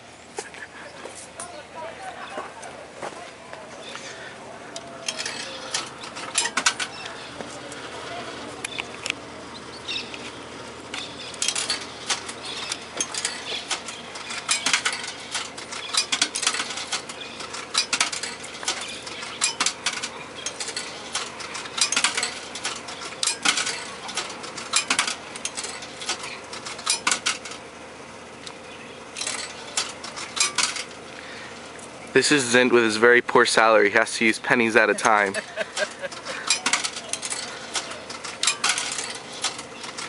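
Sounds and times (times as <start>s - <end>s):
coins clinking into a machine: 5.0s - 7.0s, 11.4s - 27.6s, 29.2s - 31.0s, 34.8s - 40.0s.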